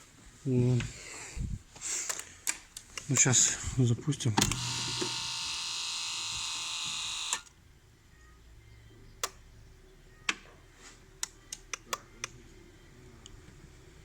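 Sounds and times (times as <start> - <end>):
small electric motor whirring: 4.5 - 7.5.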